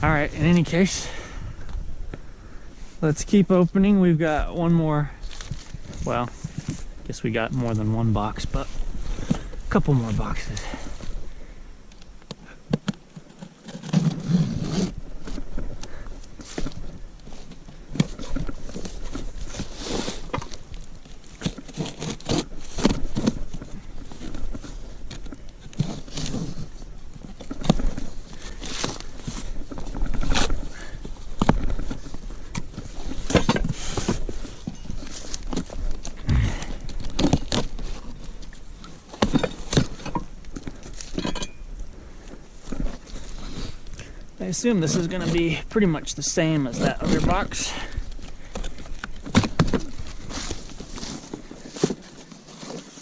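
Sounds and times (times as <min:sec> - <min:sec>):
cardboard rustling and scraping: 0:05.3 - 0:11.5, 0:12.4 - 0:53.0
parts knocking and clattering: 0:39.1 - 0:41.7.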